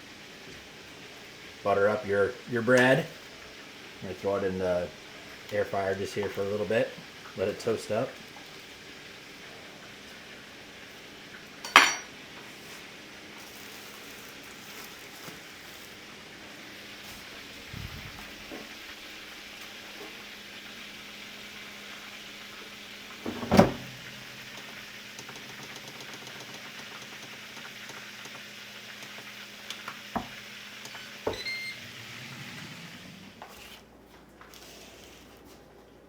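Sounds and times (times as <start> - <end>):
fish sizzling in hot oil: 0.0 - 23.2, 23.9 - 33.6
loud clunk: 23.2 - 24.0
short high beep: 31.3 - 31.8.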